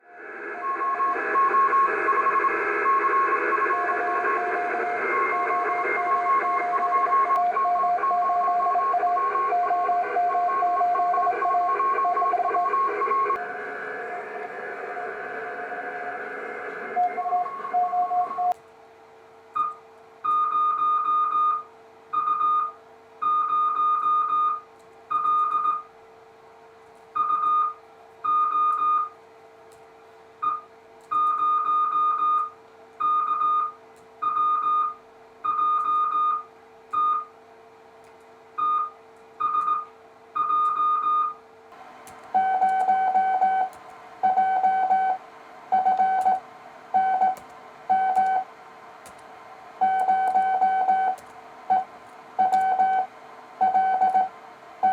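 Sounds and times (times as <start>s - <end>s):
faint steady hum: 0.0s - 54.9s
morse code beeps: 0.6s - 13.4s, 19.6s - 25.9s, 27.2s - 29.1s, 30.4s - 37.3s, 38.6s - 41.4s, 42.2s - 46.4s, 47.0s - 48.5s, 49.8s - 54.9s.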